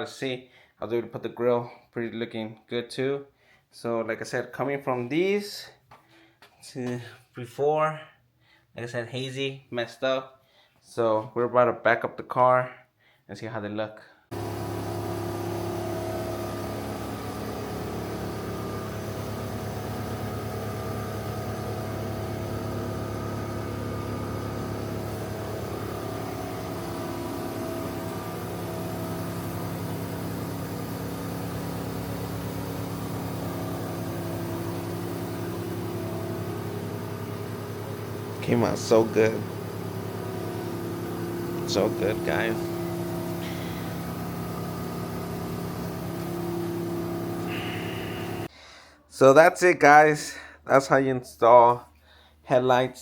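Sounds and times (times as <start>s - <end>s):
car engine idling: 14.3s - 48.5s.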